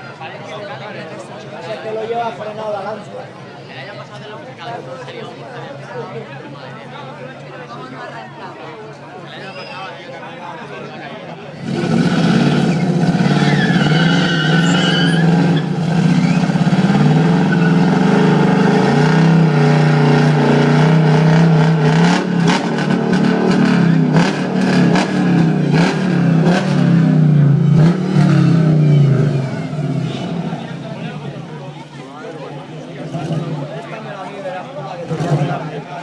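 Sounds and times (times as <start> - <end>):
car engine revving hard: 11.5 - 31.9, 33.0 - 33.8, 35.0 - 35.8.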